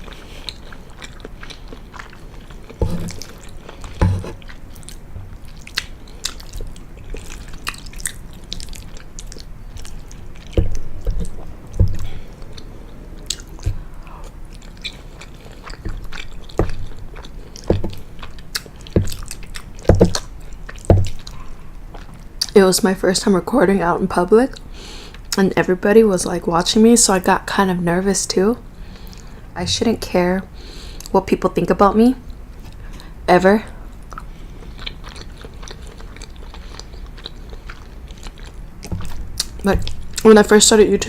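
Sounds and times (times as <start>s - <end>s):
chewing pasta: 0.0s - 22.6s, 33.9s - 40.8s
mouth clicks and smacks: 34.0s - 40.3s.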